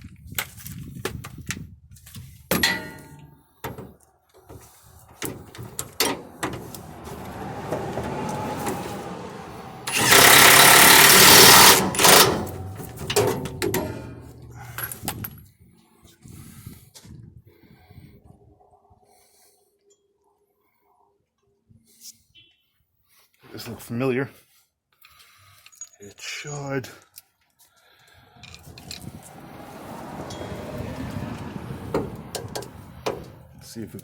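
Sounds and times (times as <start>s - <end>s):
hand tools clinking on metal: 2.6s - 3.2s, 9.9s - 15.1s
impact wrench running: 6.0s - 14.7s.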